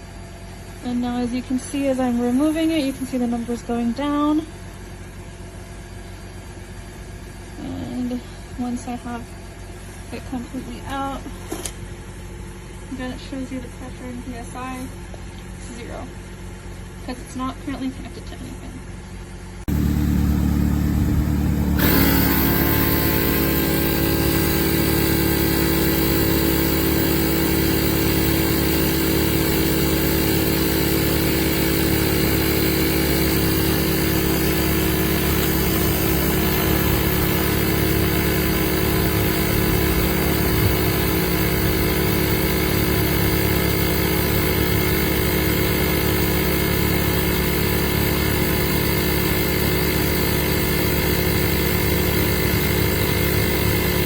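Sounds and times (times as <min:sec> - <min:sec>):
air compressor motor buzz: 0:19.7 - 0:54.0
compressor hiss and whine: 0:19.7 - 0:54.0.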